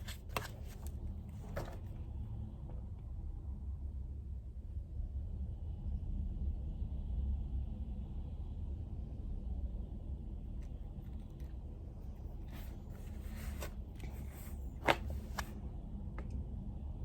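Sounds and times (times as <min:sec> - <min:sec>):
paper rustling: 0:00.0 - 0:02.0, 0:10.6 - 0:15.6
low steady rumble: 0:00.0 - 0:17.0.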